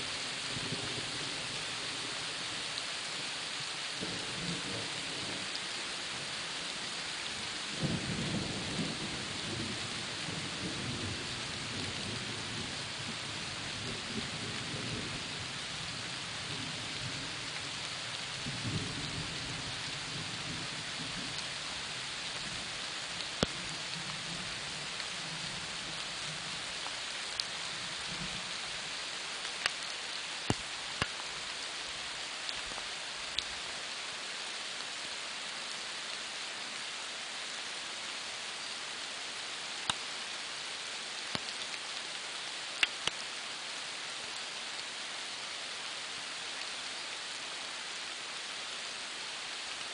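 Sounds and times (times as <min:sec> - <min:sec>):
steady rain falling: 0:00.0 - 0:49.9
heavy raindrop tap: 0:30.5 - 0:31.2.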